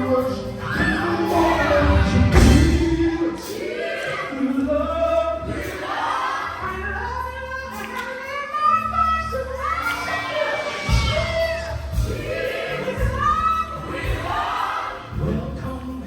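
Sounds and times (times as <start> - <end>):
sustained bass notes: 0.0 - 3.4
choir singing gospel music: 0.0 - 16.0.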